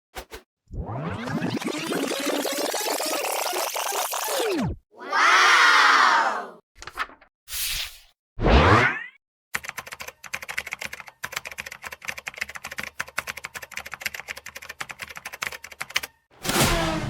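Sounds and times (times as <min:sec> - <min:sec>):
keyboard typing: 0:09.6 - 0:16.2.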